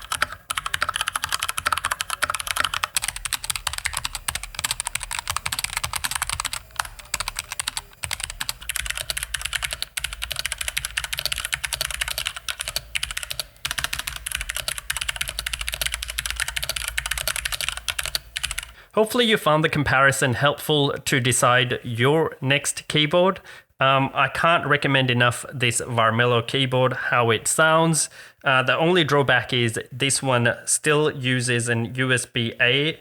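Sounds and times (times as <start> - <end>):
fast typing on mechanical keyboard: 0.0 - 18.8.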